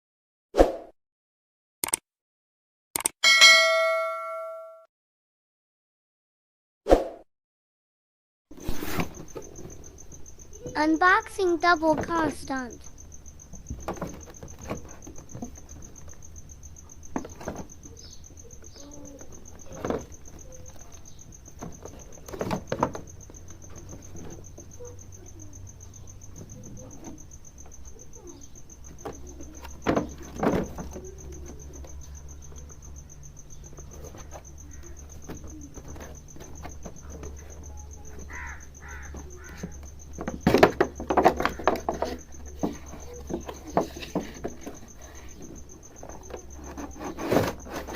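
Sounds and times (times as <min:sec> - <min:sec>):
steady high-pitched tone: 0:03.2 - 0:04.8.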